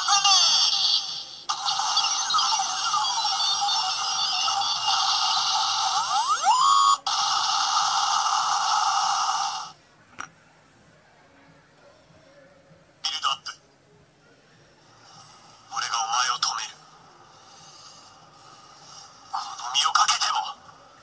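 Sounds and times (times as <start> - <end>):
electronic whirr: 1.4 - 9.8
synthetic tone with pitch sweeps: 1.6 - 7.1.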